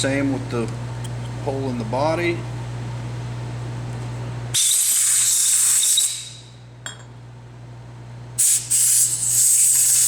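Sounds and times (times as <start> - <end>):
pressurized spray hissing: 8.4 - 10.0.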